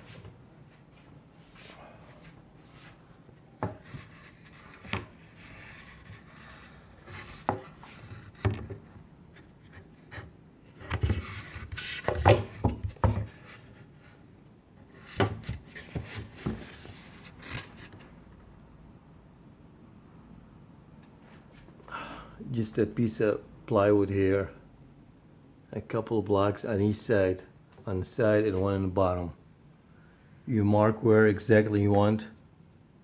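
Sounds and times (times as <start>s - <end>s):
wood scraping: 3.6s - 13.8s.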